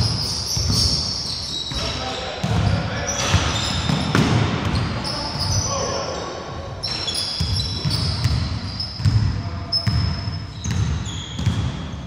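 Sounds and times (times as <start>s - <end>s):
basketball bouncing on wooden floor: 0.0s - 1.1s, 2.4s - 4.9s, 6.8s - 12.0s
sneakers squeaking on wood: 0.0s - 12.0s.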